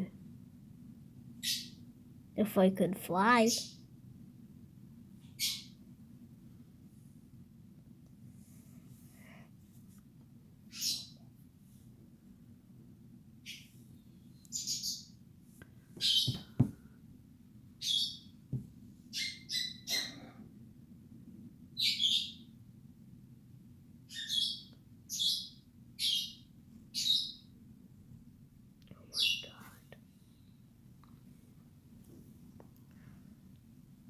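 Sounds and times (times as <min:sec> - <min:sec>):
small birds chirping: 0:01.4 - 0:01.9, 0:03.1 - 0:03.9, 0:05.2 - 0:05.8, 0:10.7 - 0:11.3, 0:13.4 - 0:15.2, 0:15.9 - 0:16.8, 0:17.8 - 0:18.4, 0:19.1 - 0:20.3, 0:21.8 - 0:22.6, 0:24.1 - 0:27.6, 0:28.9 - 0:30.0.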